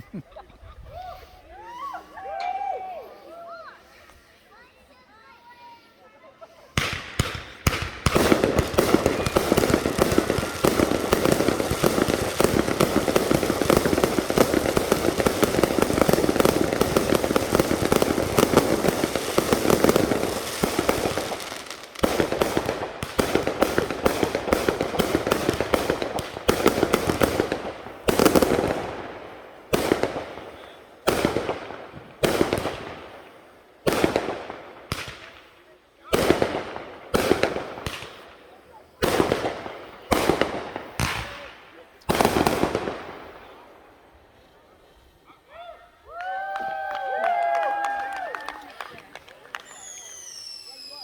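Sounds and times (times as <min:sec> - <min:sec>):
fireworks crackling bangs: 0:06.7 - 0:45.2
sharp firework reports: 0:06.8 - 0:33.2.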